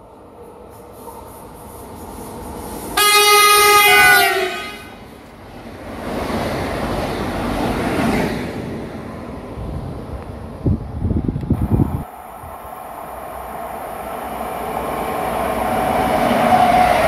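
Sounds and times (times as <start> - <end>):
train wheels rumbling on track: 0.0 - 17.0
train horn: 3.0 - 5.1.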